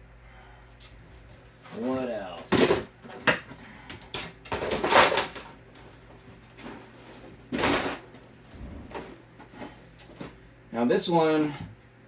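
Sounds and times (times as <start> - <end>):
plastic pieces rustling and clattering: 4.1 - 8.3.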